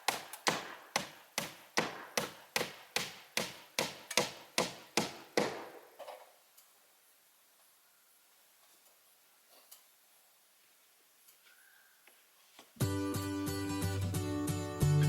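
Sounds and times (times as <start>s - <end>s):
hard strikes on wood: 0.0s - 5.9s.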